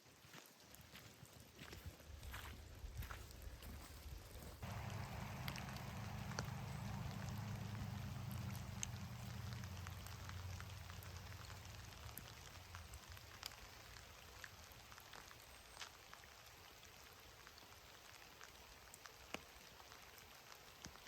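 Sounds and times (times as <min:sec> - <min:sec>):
faint rain hiss: 0:03.7 - 0:21.0
low rumble: 0:04.6 - 0:13.4
raindrops tapping: 0:04.6 - 0:16.3.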